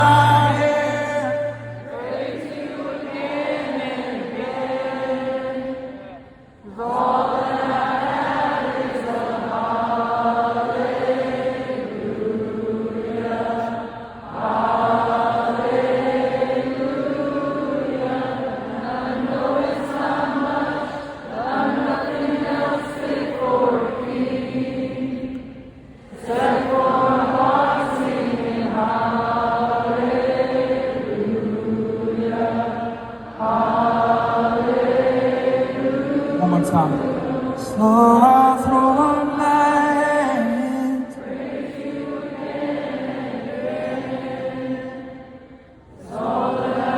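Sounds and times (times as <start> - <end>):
crowd singing a worship song: 0.0 - 46.9.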